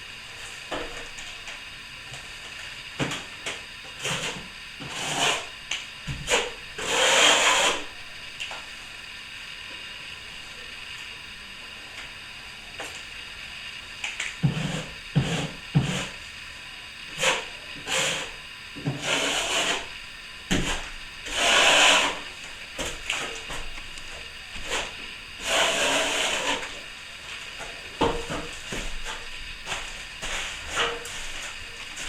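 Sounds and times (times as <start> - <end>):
trowel scraping plaster: 4.0 - 5.5, 6.1 - 7.9, 14.4 - 16.2, 17.1 - 19.9, 20.6 - 22.2, 24.6 - 26.8, 28.1 - 32.0.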